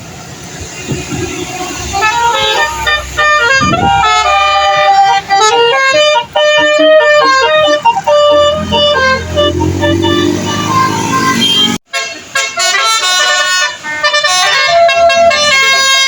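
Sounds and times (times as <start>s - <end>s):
low vehicle rumble: 0.0s - 11.8s
multi-tone horn melody: 1.8s - 16.0s.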